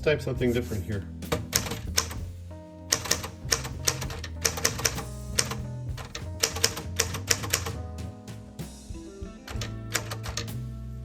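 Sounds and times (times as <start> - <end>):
background music: 0.0 - 11.0
typewriter key strikes: 2.9 - 5.5.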